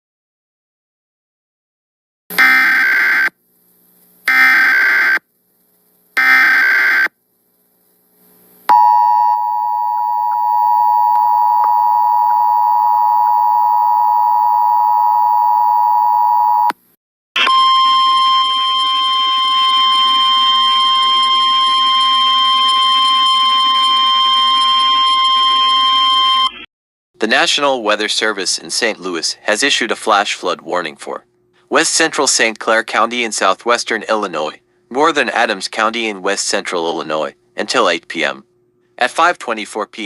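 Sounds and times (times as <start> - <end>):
steady weather radio warning tone: 8.7 - 16.7, 17.4 - 26.6
two-tone attention signal: 8.7 - 16.7, 17.4 - 26.6.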